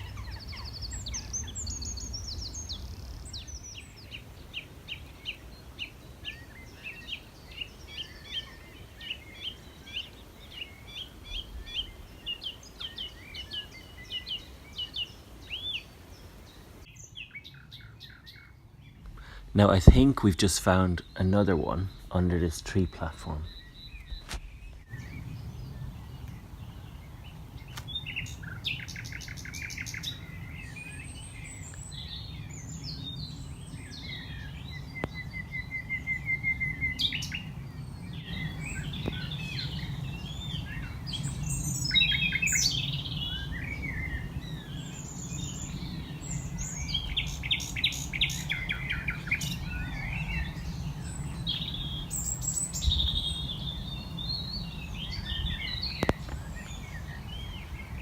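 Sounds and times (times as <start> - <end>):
nightingale singing: 0.0 - 58.0
low rumble: 18.8 - 28.6.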